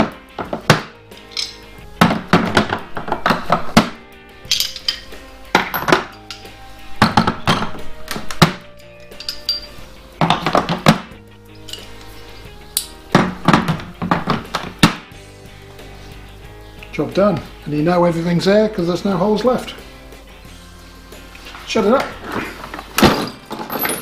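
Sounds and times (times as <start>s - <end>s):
background music: 0.0s - 24.0s
metal hand tools clinking: 1.1s - 1.8s, 4.4s - 7.8s, 8.8s - 10.9s, 11.5s - 13.0s, 21.6s - 24.0s.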